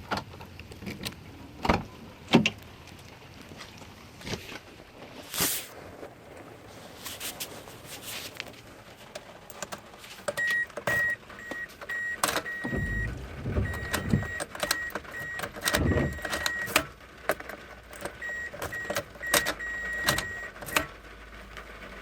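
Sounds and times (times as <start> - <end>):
car key-reminder chime beeping: 10.5 - 16.8
low rumble: 12.6 - 14.4.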